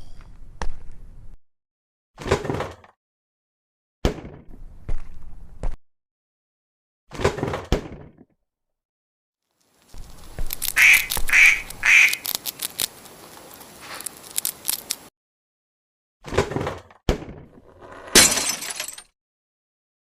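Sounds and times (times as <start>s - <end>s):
duck quacking: 10.8s - 12.2s.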